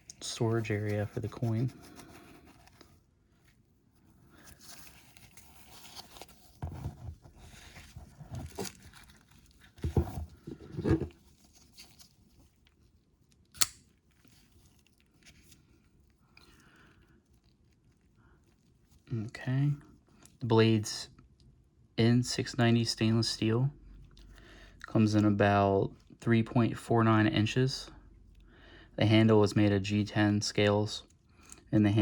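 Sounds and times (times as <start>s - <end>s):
rustling and scraping: 0.0s - 12.9s.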